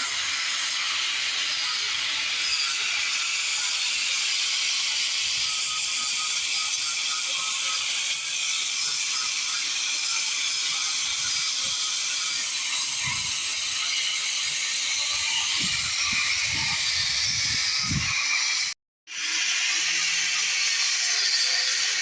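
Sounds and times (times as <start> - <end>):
angle grinder hissing on wood: 0.0 - 22.0.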